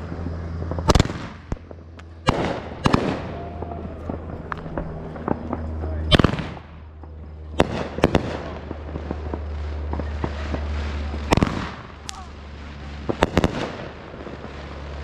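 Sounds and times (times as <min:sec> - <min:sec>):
fireworks bangs: 0:00.0 - 0:15.0
small fireworks pops: 0:00.0 - 0:15.0
steady low hum: 0:00.0 - 0:15.0.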